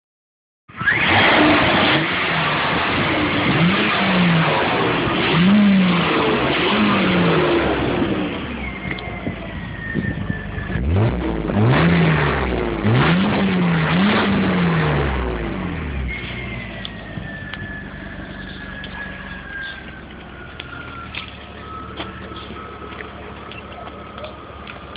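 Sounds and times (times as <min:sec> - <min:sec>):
car engine revving: 0:00.8 - 0:24.9.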